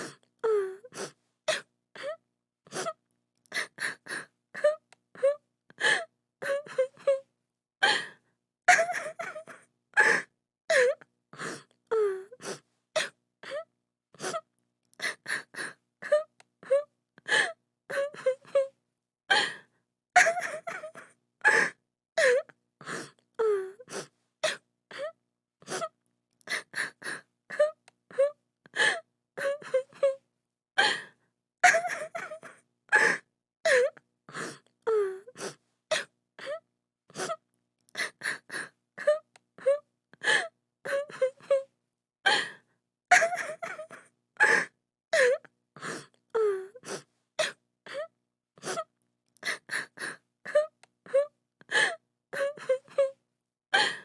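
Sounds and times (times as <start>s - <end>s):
woman sobbing and crying: 0.0s - 7.2s, 8.7s - 11.0s, 15.0s - 18.7s, 20.2s - 25.9s, 26.5s - 30.2s, 31.6s - 37.4s, 38.0s - 41.7s, 43.1s - 53.2s.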